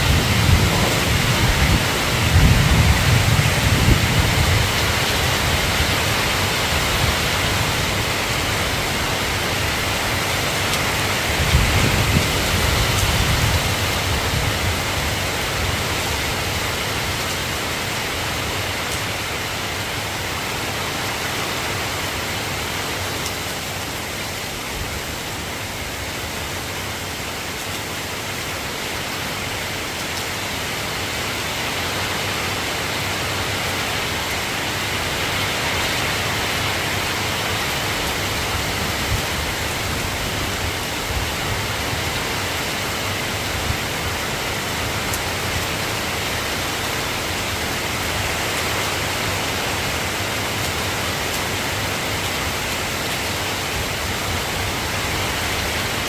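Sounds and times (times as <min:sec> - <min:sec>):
low rumble: 0:00.0 - 0:04.1
soft rain falling: 0:00.0 - 0:56.0.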